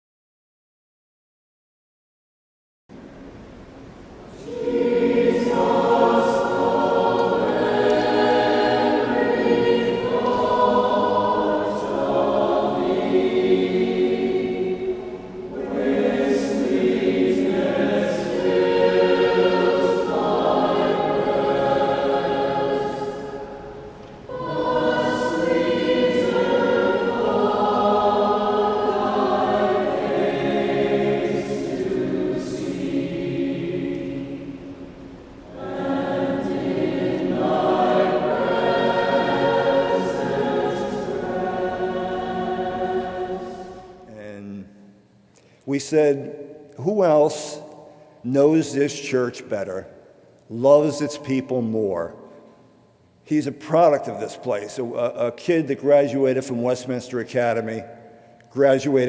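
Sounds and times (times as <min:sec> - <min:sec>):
choir singing: 0:04.3 - 0:44.6.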